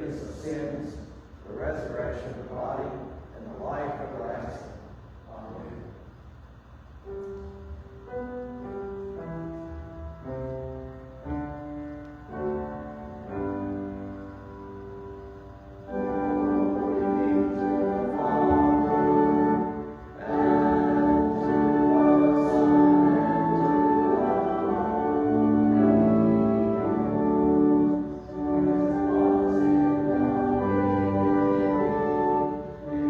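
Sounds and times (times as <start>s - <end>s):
church organ playing hymn: 0.0s - 4.8s, 7.0s - 33.0s.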